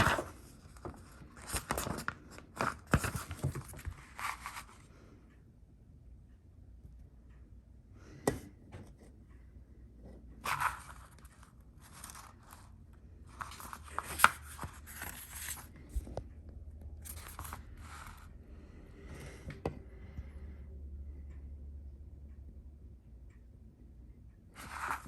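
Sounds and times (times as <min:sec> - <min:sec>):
paper rustling and crinkling: 0:00.0 - 0:04.8, 0:10.4 - 0:12.7, 0:13.3 - 0:15.7, 0:24.6 - 0:25.0
faint low hum: 0:00.0 - 0:25.0.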